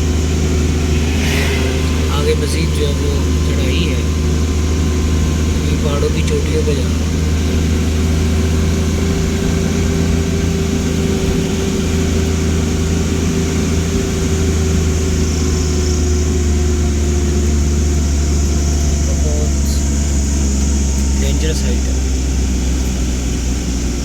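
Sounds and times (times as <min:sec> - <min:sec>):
car engine under load: 0:00.0 - 0:24.0.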